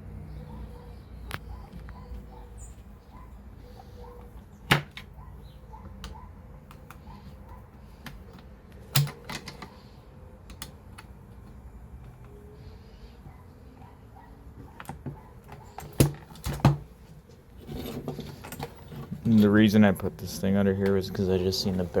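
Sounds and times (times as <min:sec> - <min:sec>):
rifle parts clicking and knocking: 0:07.8 - 0:09.8.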